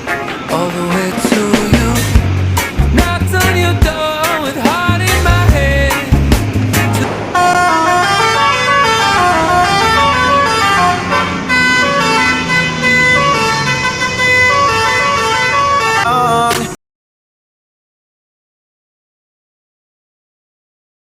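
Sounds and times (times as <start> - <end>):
musical bus air horn: 6.8 - 16.6.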